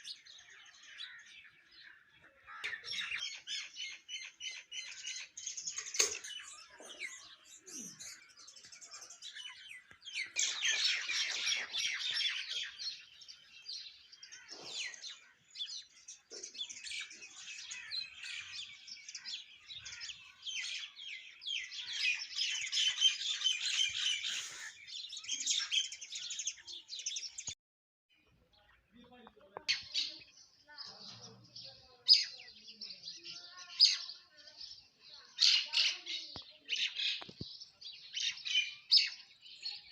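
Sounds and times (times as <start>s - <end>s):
mynas and sparrows chirping: 0.0s - 39.9s.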